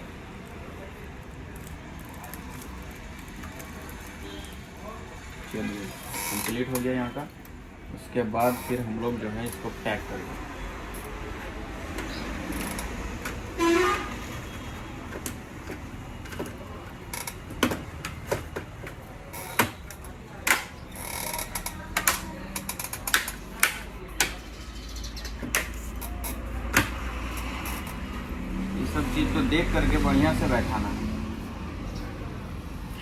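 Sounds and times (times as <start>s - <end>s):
plastic laptop parts clicking: 15.0s - 24.5s.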